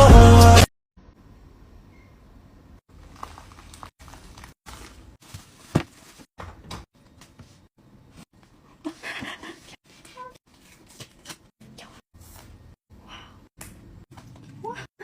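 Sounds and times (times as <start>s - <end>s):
plastic packaging rustling: 2.9s - 6.3s.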